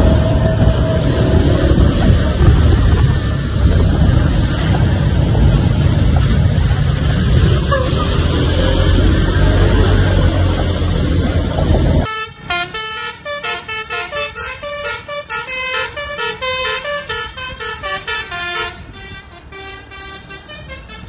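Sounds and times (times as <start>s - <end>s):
loud road noise: 0.0s - 21.0s
musical bus horn playing a tune: 7.6s - 9.0s, 12.0s - 21.0s.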